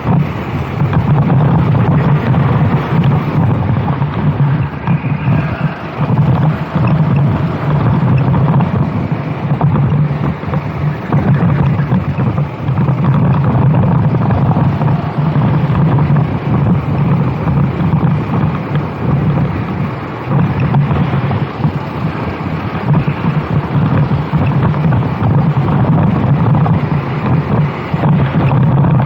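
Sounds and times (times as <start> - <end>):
kart engine running hard: 0.0 - 29.0
wind buffeting microphone: 0.0 - 29.0.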